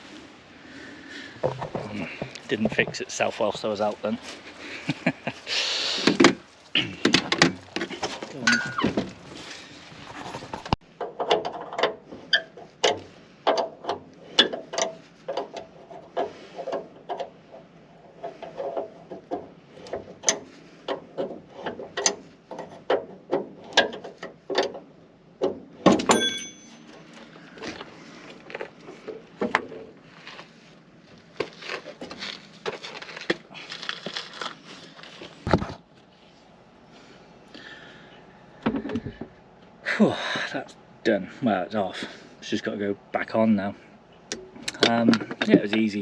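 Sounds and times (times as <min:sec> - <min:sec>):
ringing metal clank: 0:26.0 - 0:27.0.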